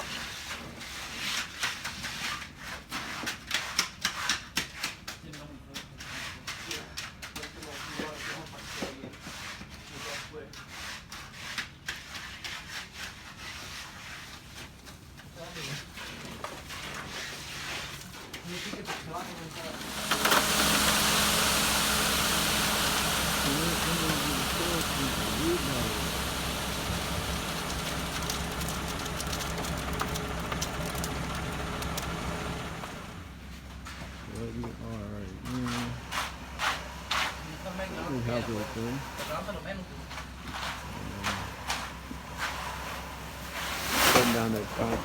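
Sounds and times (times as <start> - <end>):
hand tools scraping wet concrete: 5.8 - 14.7, 15.5 - 33.2, 35.4 - 45.0
gritty rushing noise: 19.6 - 33.2
truck engine running: 19.6 - 45.0.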